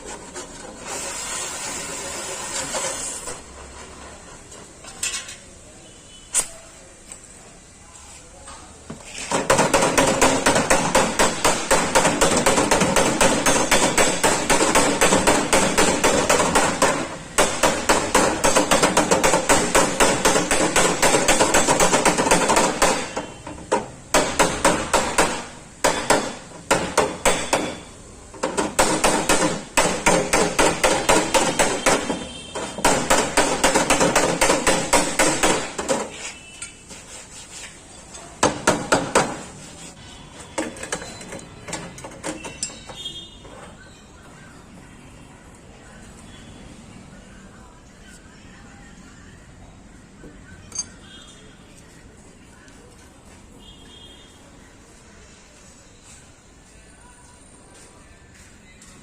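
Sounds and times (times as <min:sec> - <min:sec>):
hammer blows on sheet metal: 0:09.3 - 0:36.2.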